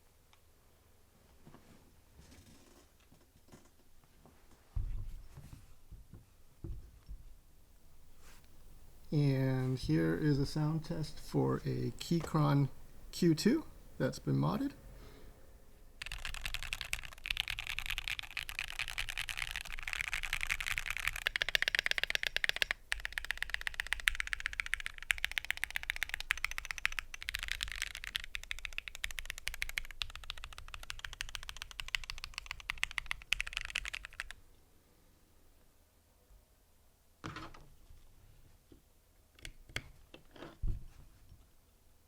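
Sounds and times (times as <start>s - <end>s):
fast mechanical keyboard typing: 16.0s - 34.4s.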